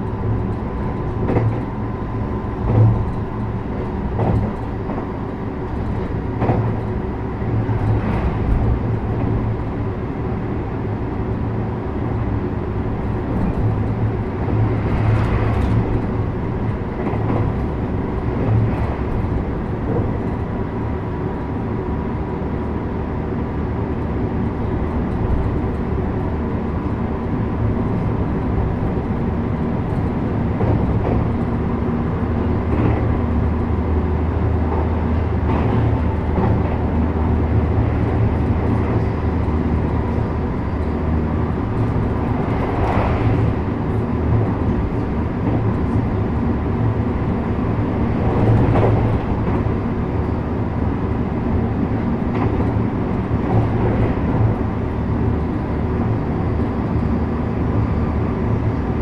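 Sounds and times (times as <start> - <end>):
wheels rumbling on rail: 0.0 - 59.0
track knocks: 0.1 - 9.8, 27.7 - 49.9.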